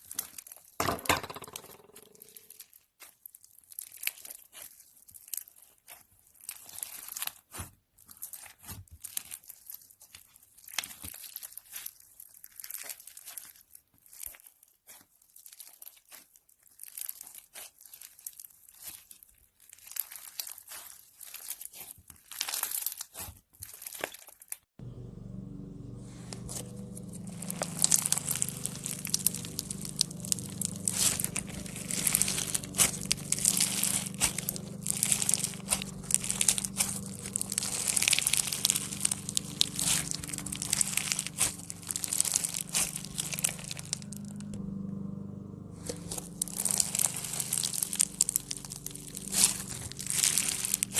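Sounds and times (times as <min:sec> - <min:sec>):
slime crackling and squishing: 0:00.0 - 0:00.7, 0:01.6 - 0:24.6, 0:26.0 - 0:44.6, 0:45.8 - 0:50.9
steady low hum: 0:24.8 - 0:50.9.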